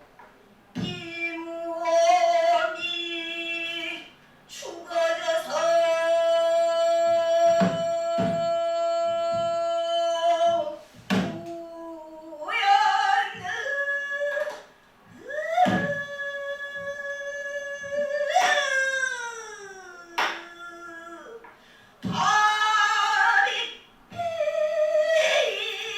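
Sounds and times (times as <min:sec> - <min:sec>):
person singing long wavering notes: 0:00.8 - 0:21.4.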